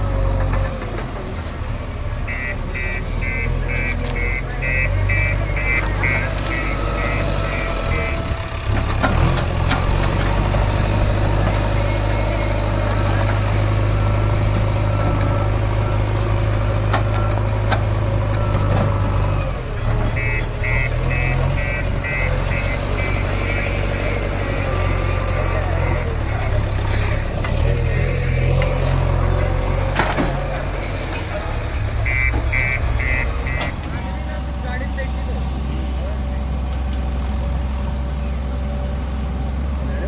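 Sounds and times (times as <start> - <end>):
heavy diesel engines running: 0.0 - 40.0
reversing alarm beeping: 2.3 - 8.4, 20.1 - 28.6, 32.0 - 33.8.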